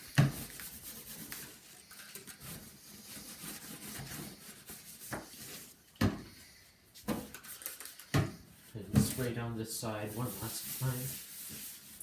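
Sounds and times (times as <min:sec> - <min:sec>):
paper towel rubbing on computer case: 0:02.4 - 0:05.8, 0:09.0 - 0:12.0.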